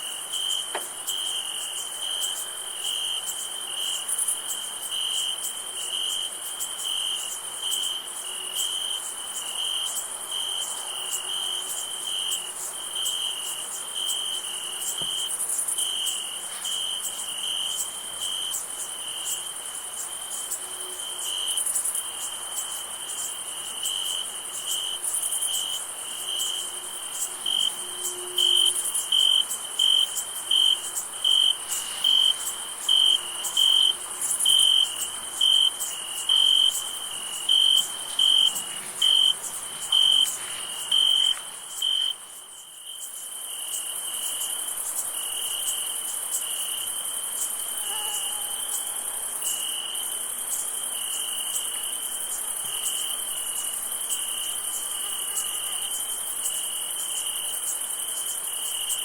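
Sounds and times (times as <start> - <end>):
crickets chirping: 0.0 - 59.0
high insect trill: 0.0 - 59.0.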